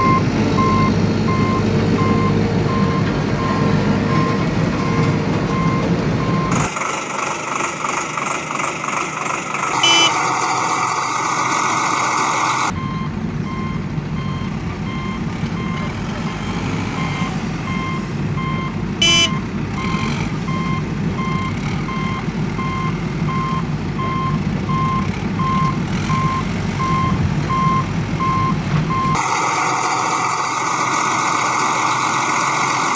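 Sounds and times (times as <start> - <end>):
reversing alarm beeping: 0.0 - 6.7, 9.8 - 10.7, 11.8 - 29.2
low diesel engine running: 0.0 - 32.9.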